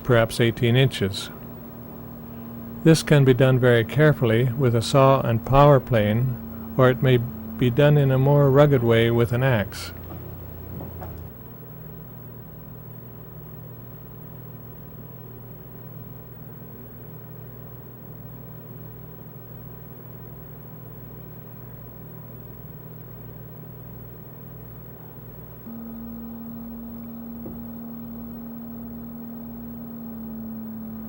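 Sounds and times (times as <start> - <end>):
higher steady tone: 0.0 - 11.3, 25.6 - 31.0
pulsing mechanical hum: 0.0 - 31.0.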